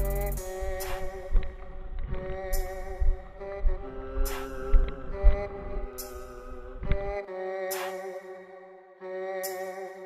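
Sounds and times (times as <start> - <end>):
background music with held chords: 0.0 - 1.9.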